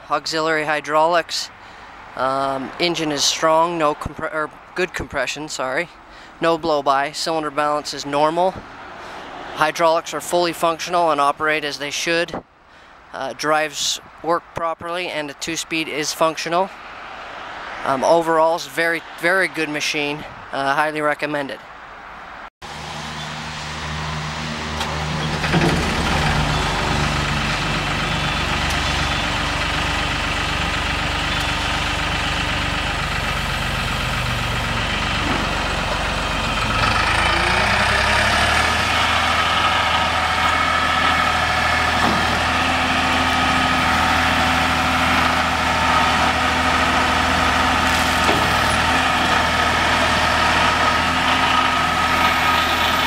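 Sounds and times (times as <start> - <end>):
diesel engine running: 22.6 - 53.0.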